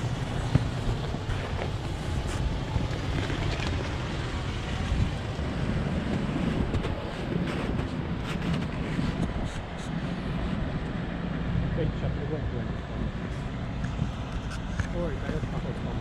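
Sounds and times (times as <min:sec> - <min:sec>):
wind noise on microphone: 0:00.0 - 0:11.7
vehicle engine rumbling: 0:00.0 - 0:16.0.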